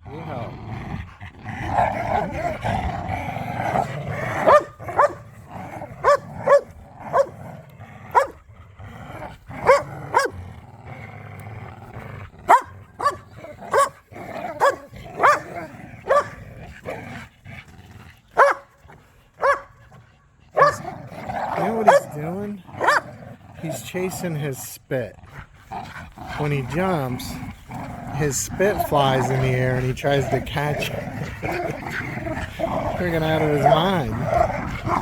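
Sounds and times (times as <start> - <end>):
dog growling: 0.0 - 35.0
dogs barking sharply: 3.7 - 7.4, 8.1 - 8.4, 9.6 - 10.4, 12.4 - 16.4, 18.3 - 19.8, 20.5 - 22.2, 22.8 - 23.1.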